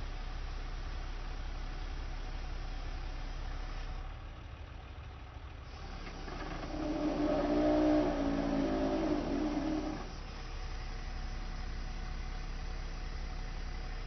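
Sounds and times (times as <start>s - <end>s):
truck engine rumbling: 4.0s - 14.0s.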